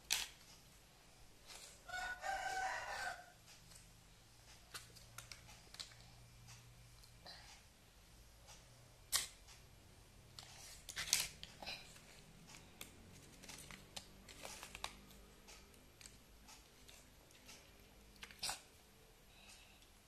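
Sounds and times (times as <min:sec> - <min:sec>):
plastic toy parts clicking: 0:00.0 - 0:00.5.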